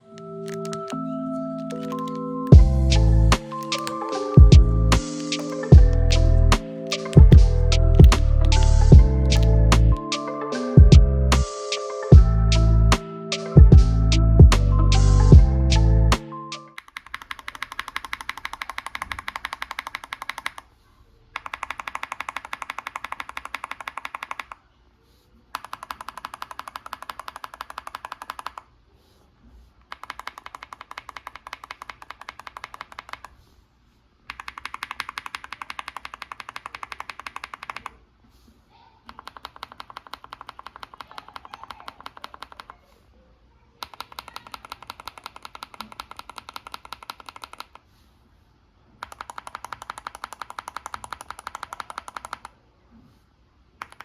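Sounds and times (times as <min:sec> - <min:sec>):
typing on mechanical keyboard: 0:00.0 - 0:02.6, 0:03.4 - 0:10.2, 0:16.8 - 0:20.7, 0:21.4 - 0:24.6, 0:25.5 - 0:28.7, 0:29.9 - 0:33.4, 0:34.3 - 0:38.0, 0:39.1 - 0:42.8, 0:43.8 - 0:47.8, 0:49.0 - 0:52.6, 0:53.8 - 0:54.0.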